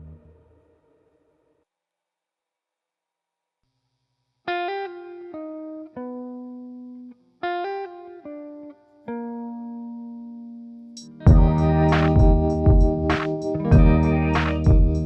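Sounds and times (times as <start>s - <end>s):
plucked guitar phrase: 11.2s - 15.0s.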